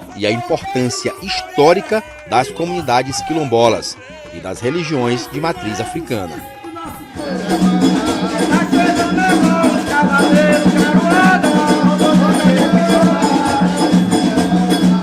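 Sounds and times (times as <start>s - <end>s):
voices singing: 0.0s - 15.0s
hand drums with wooden knocking: 6.6s - 15.0s.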